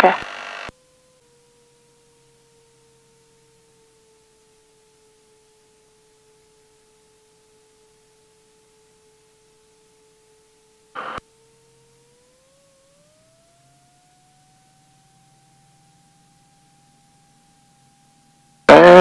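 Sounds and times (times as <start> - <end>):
electrical whine in intercom: 0.0 - 0.7, 11.0 - 11.2, 18.7 - 19.0
intercom crackle burst: 0.0 - 0.7, 11.0 - 11.2.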